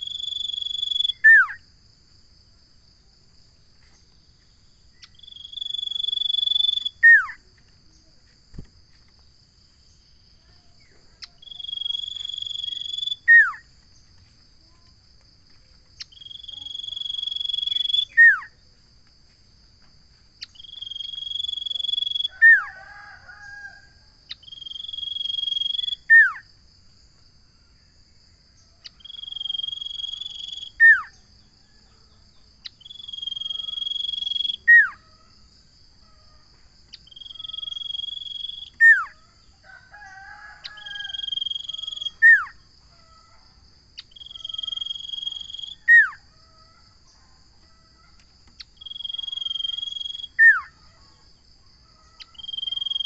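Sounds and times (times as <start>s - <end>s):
bird whistling song: 0.0s - 1.6s, 11.2s - 13.7s, 16.0s - 18.5s, 20.4s - 22.7s, 37.0s - 39.2s, 44.0s - 46.2s, 48.6s - 50.8s.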